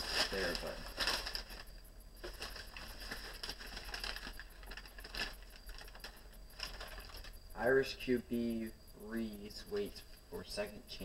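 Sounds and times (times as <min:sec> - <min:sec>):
newspaper rustling: 0:00.0 - 0:07.4.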